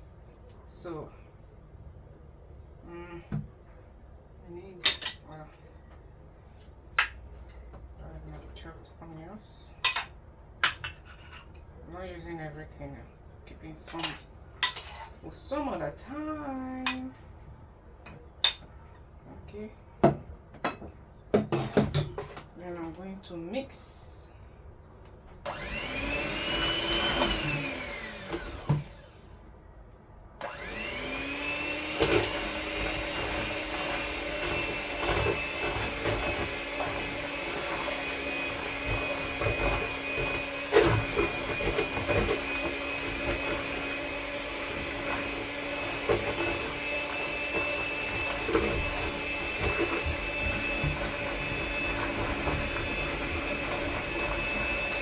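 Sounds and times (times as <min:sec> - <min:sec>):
electric mixer motor whirring: 0:25.5 - 0:29.2, 0:30.4 - 0:55.0.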